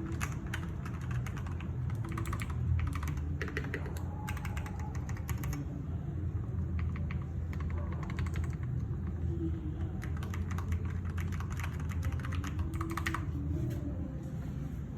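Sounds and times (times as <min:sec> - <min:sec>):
mechanical keyboard typing: 0:00.0 - 0:05.7, 0:06.6 - 0:09.2, 0:09.8 - 0:13.4
steady low hum: 0:00.0 - 0:14.9.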